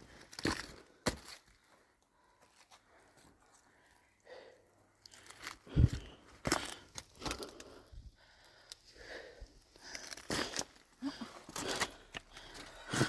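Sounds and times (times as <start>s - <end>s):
rustling and crunching: 5.0s - 7.9s.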